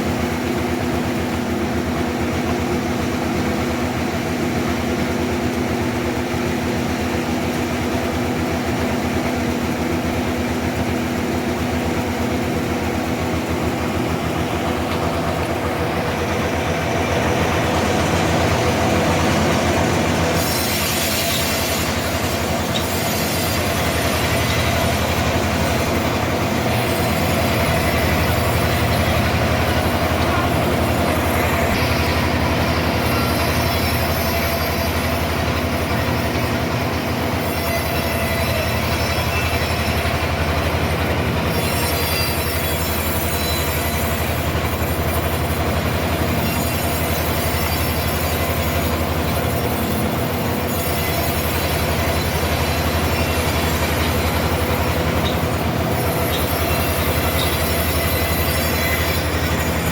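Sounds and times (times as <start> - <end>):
sawmill blade cutting log: 0.0 - 59.9
high squeal: 17.1 - 45.4, 46.1 - 59.9.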